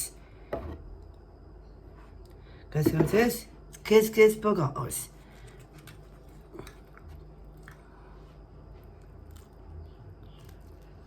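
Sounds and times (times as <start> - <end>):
chewing and biting food: 5.4 - 11.0.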